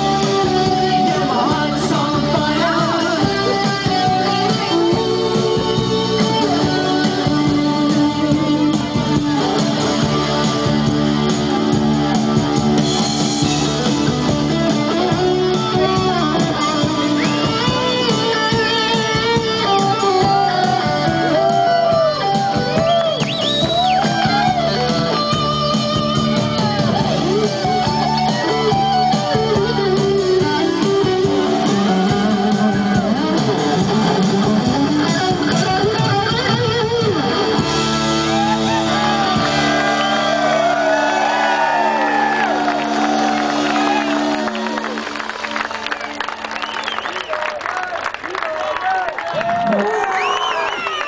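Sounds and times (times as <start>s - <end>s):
person singing: 0.0s - 9.5s
guitar: 0.0s - 48.4s
live rock band playing: 0.0s - 48.4s.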